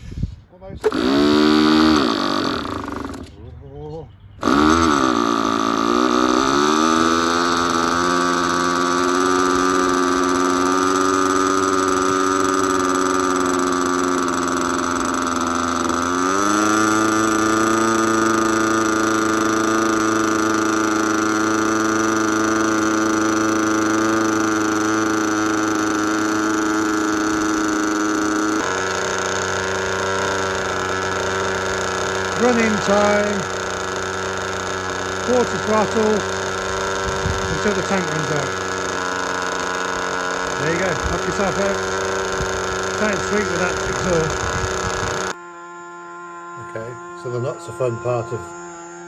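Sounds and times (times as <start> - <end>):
model aircraft engine running: 0.8 - 3.4, 4.4 - 49.0.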